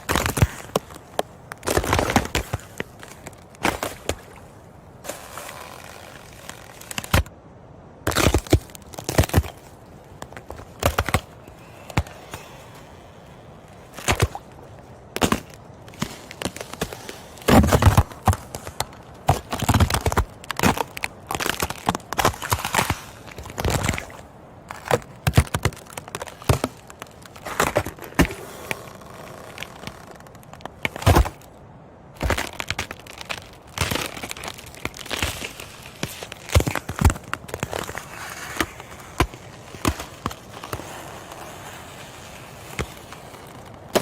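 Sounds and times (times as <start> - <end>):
ice cracking and crunching: 0.0 - 7.3, 8.1 - 44.0.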